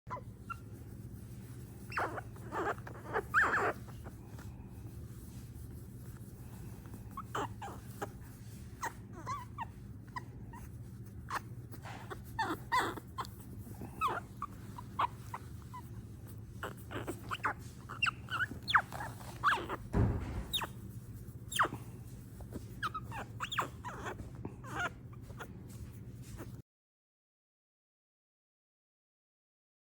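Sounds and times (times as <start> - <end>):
baby animal squeaking: 1.7 - 4.5, 6.5 - 25.5.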